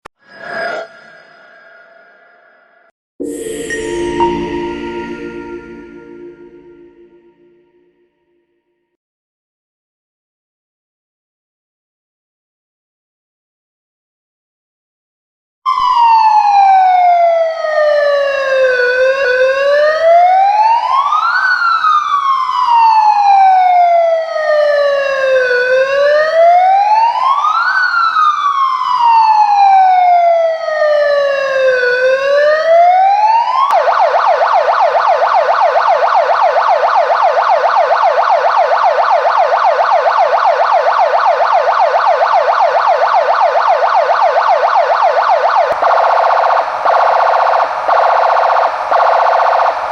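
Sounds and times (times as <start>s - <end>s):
electronic siren wail: 15.7s - 49.9s
electronic siren fast warble: 33.5s - 49.9s.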